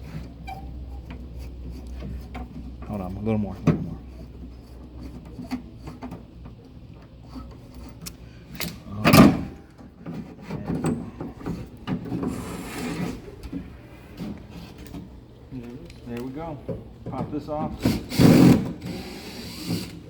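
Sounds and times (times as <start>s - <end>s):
scraping rub: 3.9s - 6.2s, 7.2s - 8.1s, 10.1s - 15.2s.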